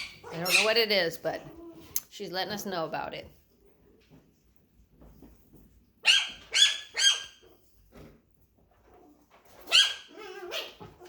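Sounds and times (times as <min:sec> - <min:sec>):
puppy yapping: 0:00.0 - 0:00.8, 0:06.0 - 0:07.6, 0:09.6 - 0:11.0
puppy whining: 0:00.0 - 0:02.0, 0:08.9 - 0:11.0.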